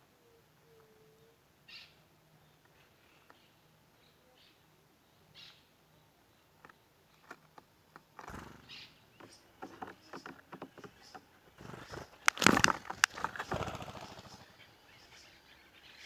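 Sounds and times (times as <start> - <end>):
faint bird chirps: 0.0 - 16.0
sharp clicks: 9.2 - 14.5
brief rustling: 9.3 - 14.4.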